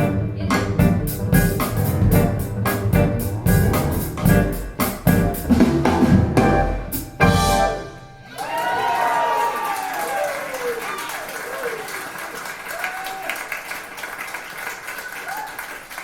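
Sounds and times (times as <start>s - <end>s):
drum and piano music: 0.0s - 8.1s.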